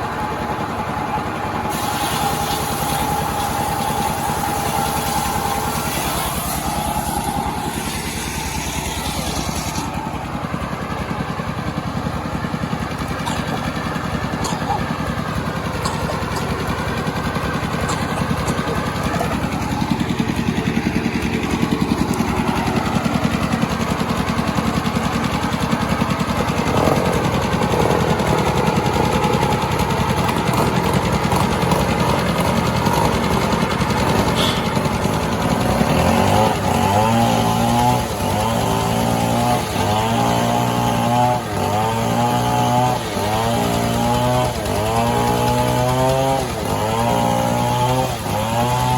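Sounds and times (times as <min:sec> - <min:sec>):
chainsaw engine running: 0:00.0 - 0:48.9.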